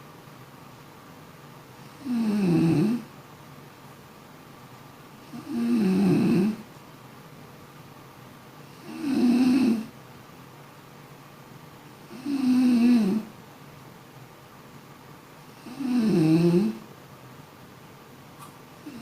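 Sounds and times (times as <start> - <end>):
person snoring: 1.9 - 3.1, 5.3 - 6.6, 8.8 - 9.9, 12.1 - 13.3, 15.6 - 16.8.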